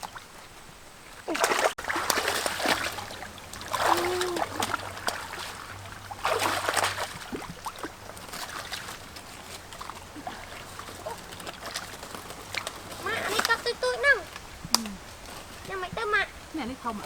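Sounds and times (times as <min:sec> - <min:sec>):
water splashing in shallow water: 0:00.0 - 0:17.0.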